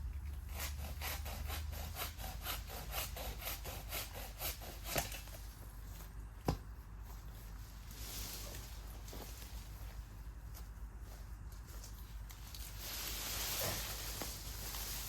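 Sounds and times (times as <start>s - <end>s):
hand saw cutting wood: 0.1s - 5.5s.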